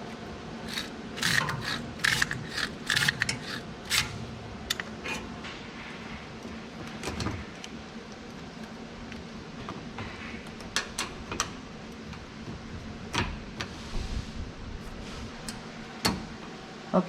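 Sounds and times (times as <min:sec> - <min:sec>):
steady low hum: 0:00.0 - 0:17.0
hand tools clicking and knocking: 0:00.7 - 0:04.1.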